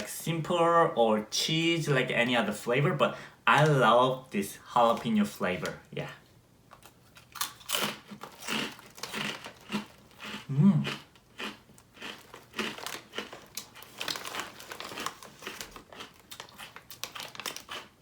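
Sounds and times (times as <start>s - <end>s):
chewing crunchy chips: 6.8s - 18.0s.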